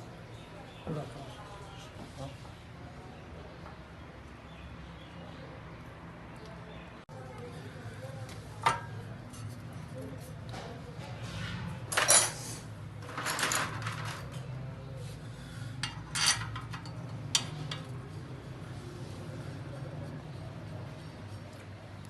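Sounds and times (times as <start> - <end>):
metal clinking and scraping: 11.2 - 14.4, 15.8 - 17.9.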